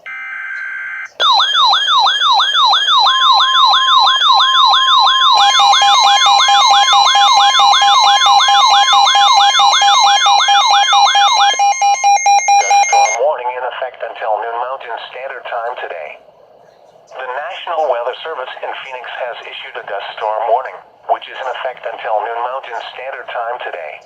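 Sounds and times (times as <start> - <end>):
steady beep tone: 0.0 - 13.2
falling siren sweep: 0.3 - 13.2.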